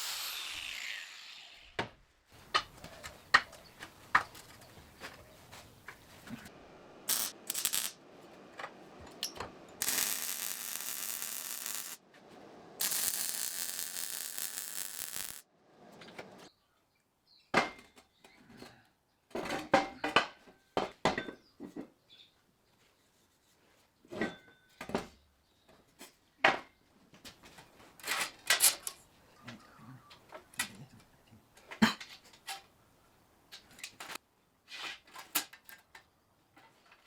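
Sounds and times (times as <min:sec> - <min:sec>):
steady hissing bursts: 0:06.4 - 0:09.0, 0:09.7 - 0:12.0, 0:12.6 - 0:15.4.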